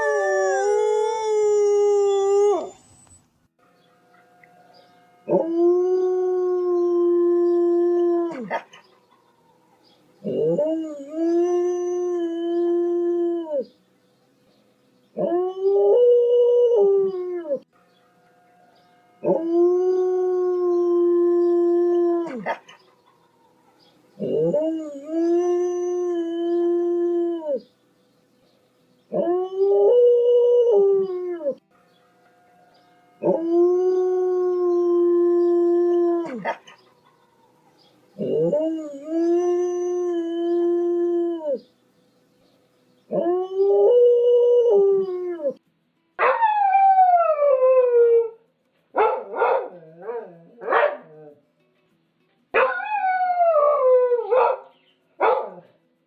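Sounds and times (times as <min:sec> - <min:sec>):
dog howling: 0:00.0 - 0:03.1, 0:05.3 - 0:08.6, 0:10.2 - 0:13.6, 0:19.2 - 0:22.6, 0:24.2 - 0:27.6, 0:33.2 - 0:36.7, 0:38.2 - 0:41.6.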